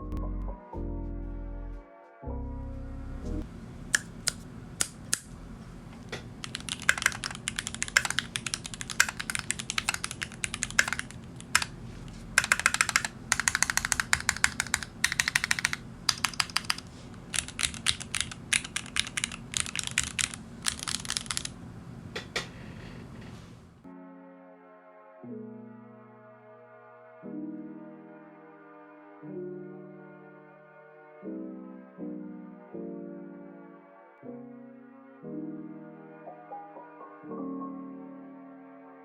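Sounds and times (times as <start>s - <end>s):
mechanical keyboard typing: 3.9s - 5.3s, 6.0s - 21.6s.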